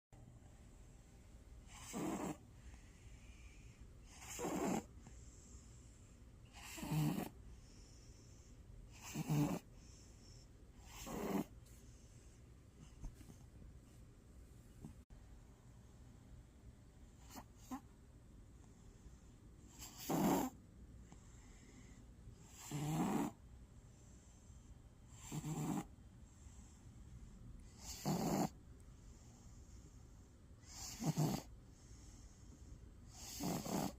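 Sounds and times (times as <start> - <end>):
cat snoring: 1.7 - 5.6, 6.4 - 8.2, 8.9 - 11.5, 17.2 - 17.8, 19.7 - 20.6, 21.3 - 23.4, 25.1 - 25.9, 27.6 - 28.6, 30.6 - 33.9.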